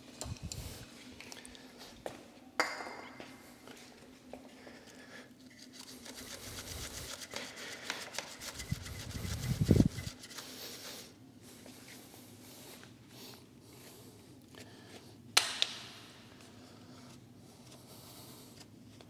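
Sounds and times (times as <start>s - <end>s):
scrubbing a motorcycle chain: 5.5s - 10.9s.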